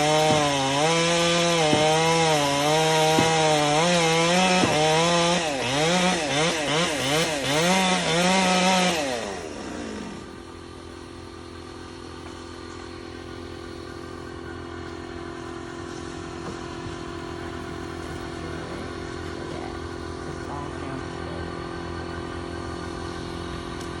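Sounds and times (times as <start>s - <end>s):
chainsaw cutting wood: 0.0s - 14.0s
chainsaw idling: 0.0s - 24.0s.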